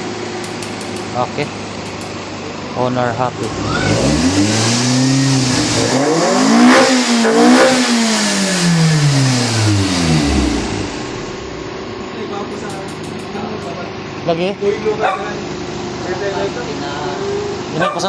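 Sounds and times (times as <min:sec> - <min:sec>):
car engine revving: 0:00.4 - 0:14.0.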